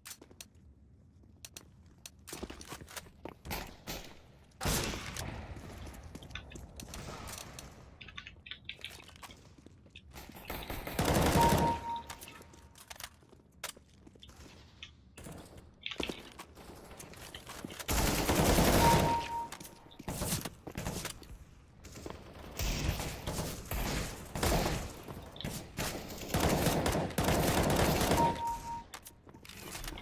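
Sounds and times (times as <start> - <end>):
rapid gunfire: 10.6 - 11.8, 17.9 - 19.2, 25.8 - 28.4
short high beep: 11.4 - 12.2, 18.8 - 19.6, 28.2 - 28.9.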